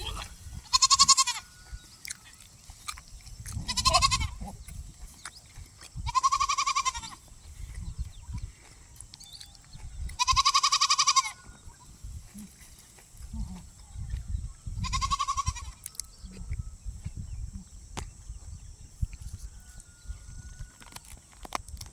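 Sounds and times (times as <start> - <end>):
goat bleating: 0.0 - 1.5, 3.6 - 4.5, 6.0 - 7.3, 10.2 - 11.5, 14.8 - 15.8.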